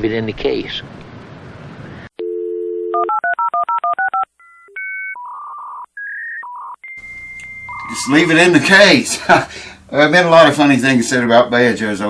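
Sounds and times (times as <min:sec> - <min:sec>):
telephone dial tone: 0:02.2 - 0:08.2
touch-tone dialing beeps: 0:02.2 - 0:08.4
electronic phone tones: 0:02.2 - 0:08.6.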